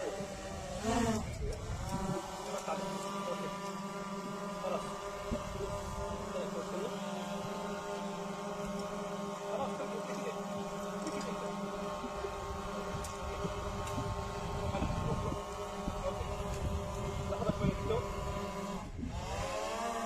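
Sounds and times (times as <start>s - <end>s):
motor humming: 0.0s - 20.0s.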